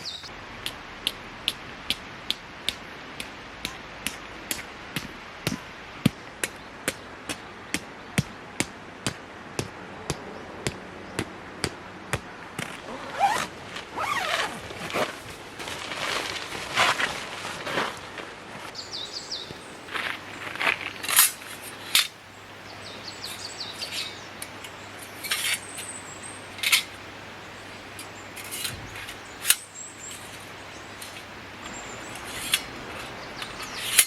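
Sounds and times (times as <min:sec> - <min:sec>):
rustling and scraping: 0:12.6 - 0:18.8, 0:23.8 - 0:26.0, 0:27.9 - 0:34.0.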